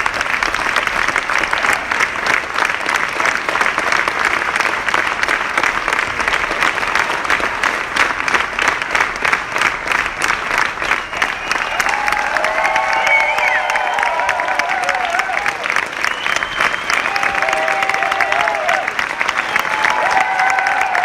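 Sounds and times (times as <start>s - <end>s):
audience applauding: 0.0s - 21.0s.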